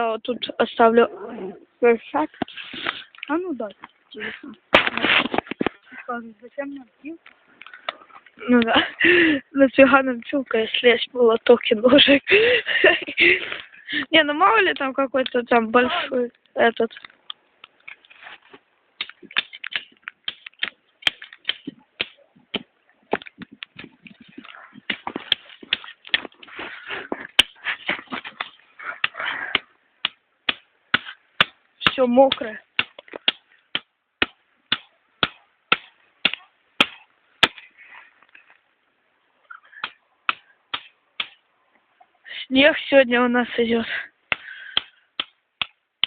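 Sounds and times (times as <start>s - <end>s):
blade chopping wooden branch: 4.7s - 5.7s, 19.0s - 26.4s, 27.3s - 37.7s, 39.8s - 41.4s, 44.3s - 45.8s.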